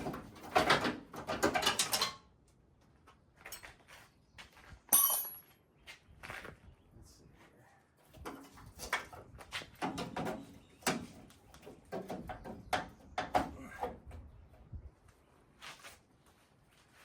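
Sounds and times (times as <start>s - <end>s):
knocks clunks and scrapes on metal: 0.0s - 2.3s, 8.0s - 14.4s.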